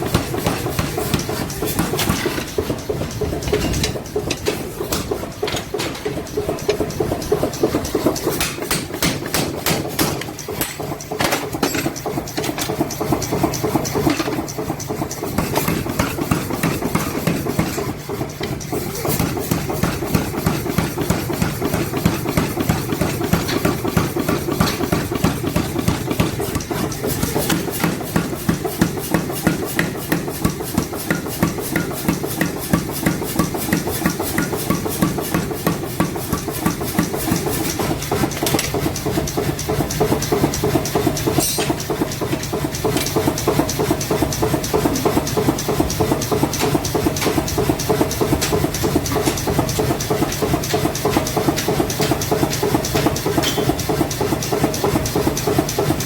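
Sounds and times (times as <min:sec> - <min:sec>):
power hammer striking steel: 0:00.0 - 0:56.0.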